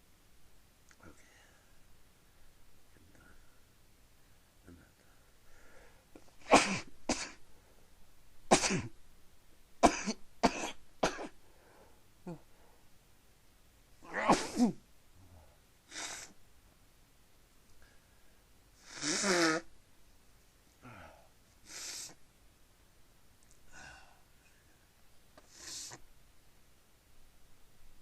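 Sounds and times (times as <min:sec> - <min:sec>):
person sneezing: 0:06.4 - 0:07.4, 0:08.5 - 0:08.9, 0:14.0 - 0:14.8, 0:15.9 - 0:16.4.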